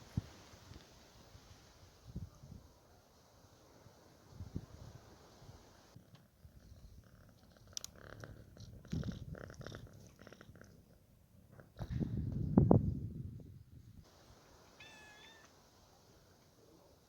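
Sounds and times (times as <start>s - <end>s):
cat purring: 5.9s - 12.1s.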